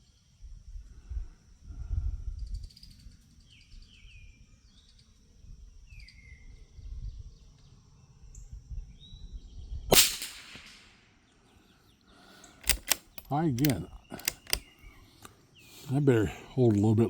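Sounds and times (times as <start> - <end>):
rifle shot with echo: 10.0 - 10.9
birds chirping: 11.4 - 17.0.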